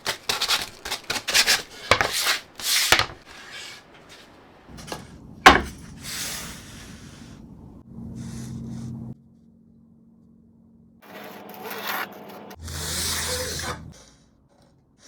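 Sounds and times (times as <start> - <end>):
wooden parts rubbing and scraping: 0.0 - 5.8
low hum: 4.7 - 12.6.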